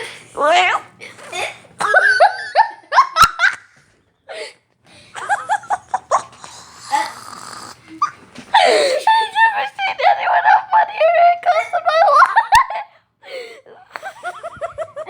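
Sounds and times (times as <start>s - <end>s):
wheezing breath: 6.3s - 9.1s.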